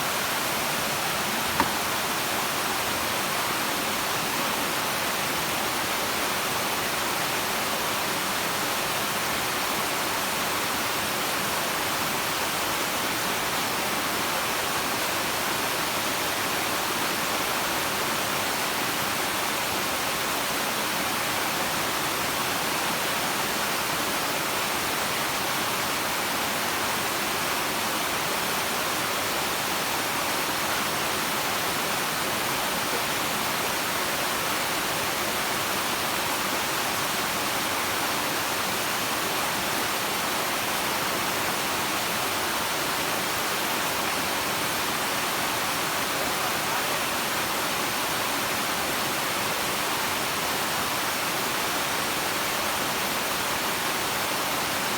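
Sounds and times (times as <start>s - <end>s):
waterfall rushing: 0.0s - 5.3s.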